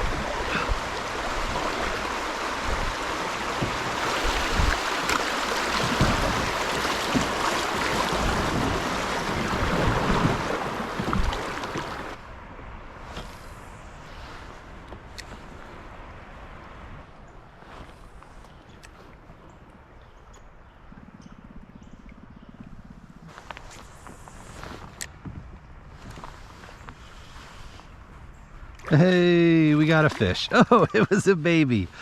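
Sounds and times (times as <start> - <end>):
river water rushing and splashing: 0.0 - 12.5
low knocks: 3.6 - 12.2.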